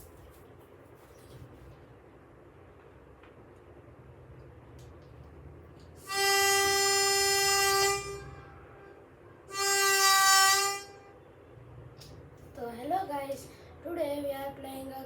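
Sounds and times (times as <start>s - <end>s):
long horn blasts: 6.0s - 11.2s.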